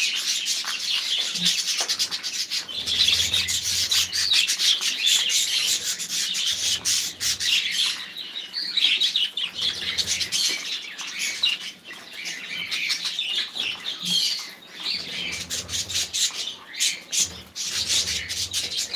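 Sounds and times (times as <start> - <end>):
small birds chirping: 0.0 - 18.9.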